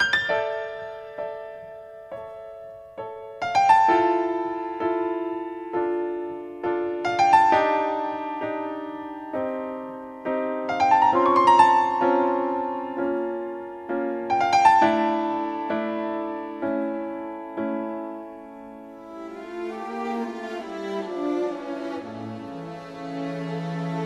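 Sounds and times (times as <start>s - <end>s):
slow solo piano: 0.0s - 19.2s.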